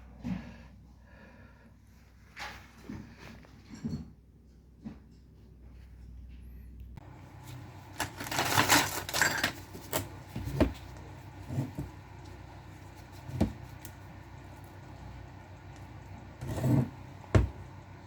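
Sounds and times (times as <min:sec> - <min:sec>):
scraping and rustling: 0:07.3 - 0:18.0.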